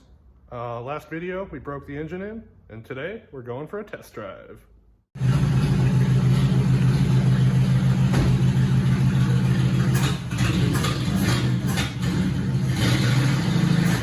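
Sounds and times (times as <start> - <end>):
car engine running steadily: 5.2 - 14.0.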